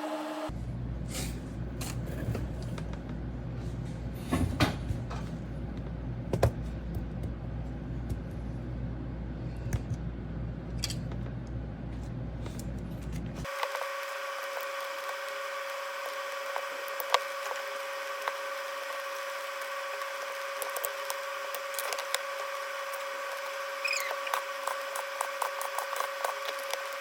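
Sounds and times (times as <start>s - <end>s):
low electrical hum: 0.4s - 27.0s.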